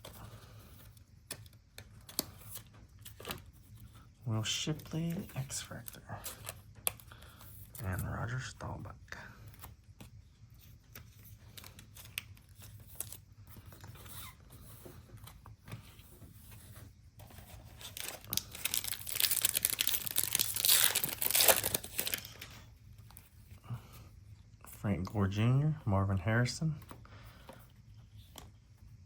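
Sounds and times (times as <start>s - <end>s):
foil wrapper tearing and crinkling: 17.6s - 22.6s.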